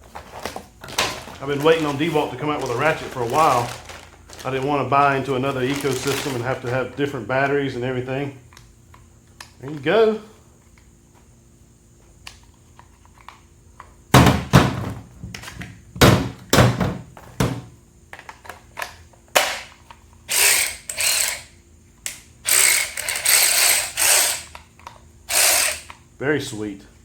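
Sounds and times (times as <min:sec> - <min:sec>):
tool handling clatter: 0:00.0 - 0:07.1
cordless ratchet whirring: 0:20.3 - 0:21.6, 0:22.4 - 0:24.6, 0:25.3 - 0:26.0.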